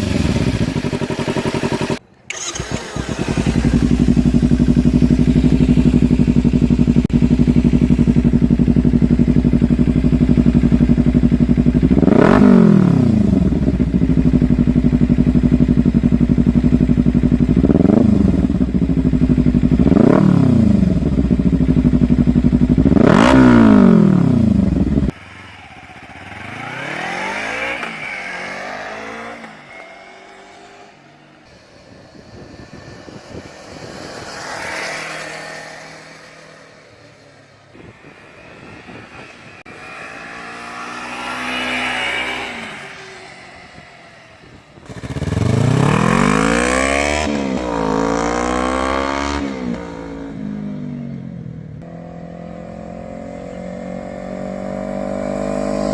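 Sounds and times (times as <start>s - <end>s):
motorcycle engine idling and revving: 0.0s - 55.9s
motorcycle passing by: 0.0s - 55.9s.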